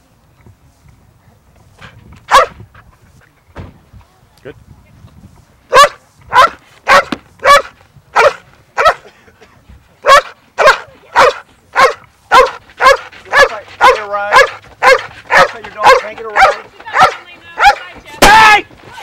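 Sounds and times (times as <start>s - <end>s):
dog barking sharply: 2.3s - 2.6s, 5.7s - 9.0s, 10.0s - 17.8s.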